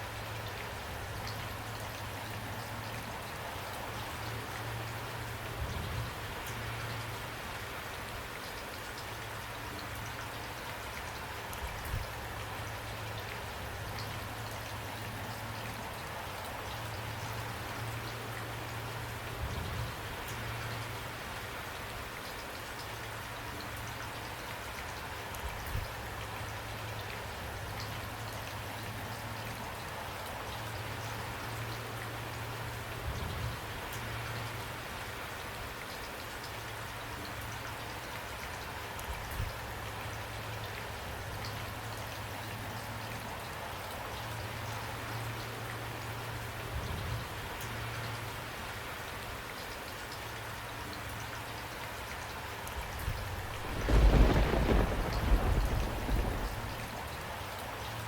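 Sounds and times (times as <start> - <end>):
steady rain falling: 0.0 - 58.0
low rumble: 53.3 - 57.1.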